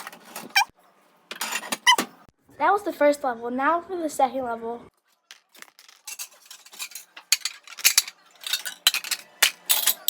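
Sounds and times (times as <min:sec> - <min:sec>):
dishes clinking and clattering: 0:01.3 - 0:02.2, 0:05.6 - 0:10.0.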